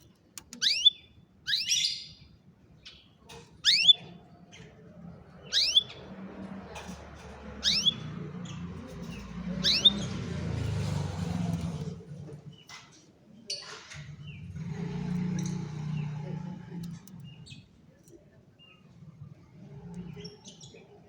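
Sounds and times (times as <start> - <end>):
canary rising call: 7.6 - 8.1, 9.5 - 10.8.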